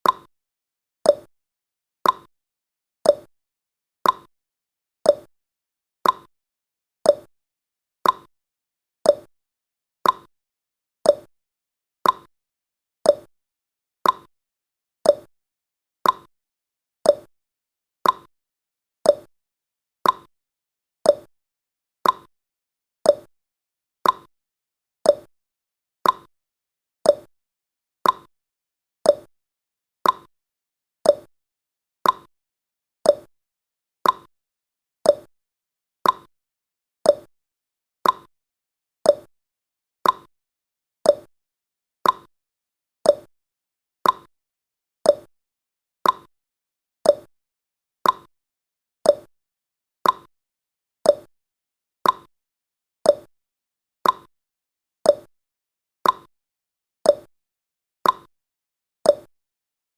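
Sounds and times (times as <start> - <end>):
timer ticking tick-tock: 0.0 - 0.3, 1.1 - 1.3, 2.0 - 2.3, 3.0 - 3.3, 4.0 - 4.3, 5.1 - 5.3, 6.0 - 6.3, 7.0 - 7.3, 8.0 - 8.3, 9.0 - 9.3, 10.0 - 10.3, 11.0 - 11.3, 12.0 - 12.3, 13.0 - 13.3, 14.0 - 14.3, 15.0 - 15.3, 16.0 - 16.3, 17.0 - 17.3, 18.0 - 18.3, 19.0 - 19.3, 20.0 - 20.3, 21.0 - 21.3, 22.0 - 22.3, 23.0 - 23.3, 24.0 - 24.3, 25.0 - 25.3, 26.0 - 26.3, 27.0 - 27.3, 28.0 - 28.3, 29.0 - 29.3, 30.0 - 30.3, 31.0 - 31.3, 32.0 - 32.3, 33.0 - 33.3, 34.0 - 34.3, 35.0 - 35.3, 36.0 - 36.3, 37.0 - 37.3, 38.0 - 38.3, 39.0 - 39.3, 40.0 - 40.3, 41.0 - 41.3, 42.0 - 42.3, 43.0 - 43.3, 44.0 - 44.3, 45.0 - 45.3, 46.0 - 46.3, 47.0 - 47.3, 48.0 - 48.3, 49.0 - 49.3, 50.0 - 50.3, 51.0 - 51.3, 52.0 - 52.3, 53.1 - 53.3, 54.0 - 54.3, 55.1 - 55.3, 56.0 - 56.3, 57.1 - 57.3, 58.0 - 58.3, 59.1 - 59.3.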